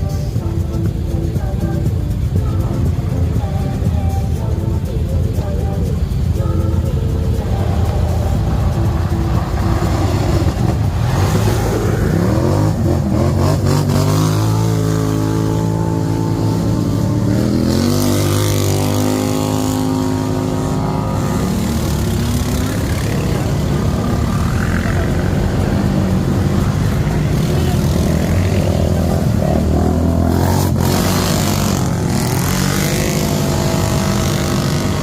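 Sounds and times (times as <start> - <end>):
atv engine revving: 0.0 - 35.0.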